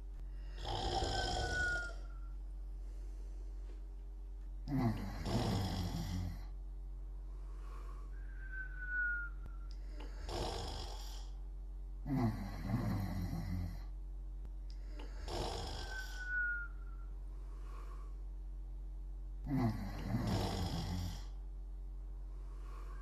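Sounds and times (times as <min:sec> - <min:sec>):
steady low hum: 0:00.0 - 0:23.0
rattling snoring: 0:00.4 - 0:02.2, 0:04.6 - 0:06.5, 0:09.9 - 0:11.4, 0:12.0 - 0:13.9, 0:14.8 - 0:16.4, 0:19.4 - 0:21.4
short high whistle: 0:08.2 - 0:09.7, 0:15.9 - 0:17.1.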